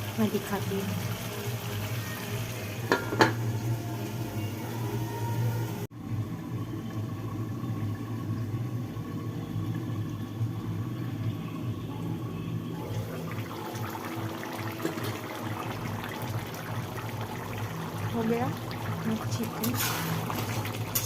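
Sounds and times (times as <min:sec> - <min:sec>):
crackle of sizzling: 0:06.6 - 0:21.0
curry bubbling in a pan: 0:12.8 - 0:21.0.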